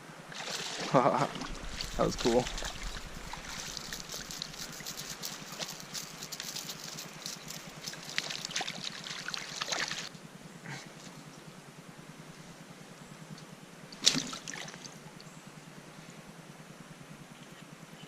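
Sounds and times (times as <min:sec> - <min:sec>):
mountain stream trickling and splashing: 0:00.3 - 0:10.1, 0:14.0 - 0:15.3.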